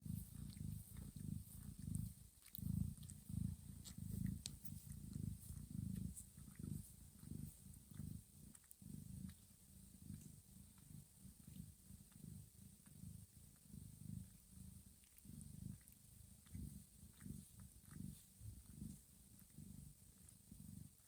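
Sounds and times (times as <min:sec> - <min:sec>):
cat purring: 0:00.0 - 0:21.0
faint soft ticks: 0:00.4 - 0:14.4.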